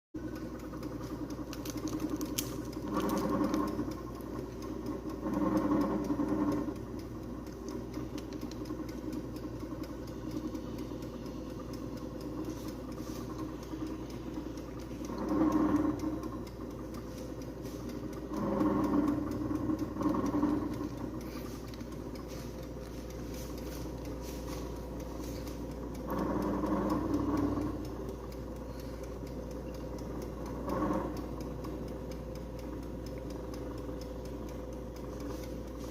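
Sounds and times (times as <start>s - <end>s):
air fryer motor and fan hum: 0.2s - 35.9s
rattly buzz: 0.2s - 35.9s.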